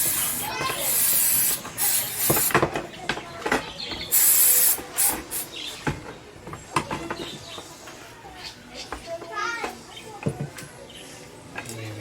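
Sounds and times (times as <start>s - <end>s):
short hissing sprays: 0.0s - 2.6s, 4.1s - 5.6s.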